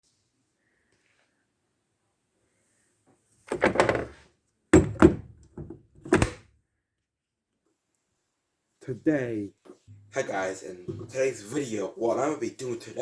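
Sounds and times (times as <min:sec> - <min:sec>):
short thuds and knocks: 0:03.5 - 0:04.2, 0:04.8 - 0:06.4.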